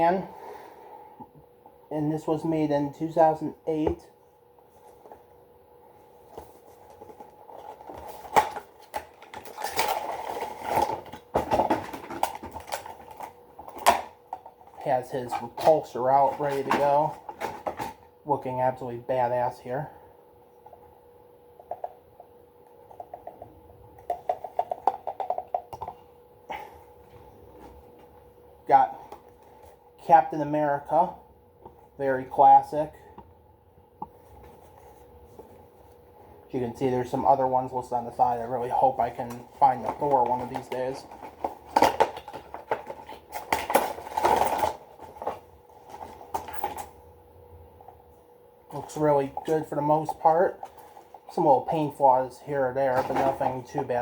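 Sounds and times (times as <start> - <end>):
faint steady hum: 0.0 - 54.0
packaging rustling and clicking: 6.3 - 18.0, 38.9 - 47.0.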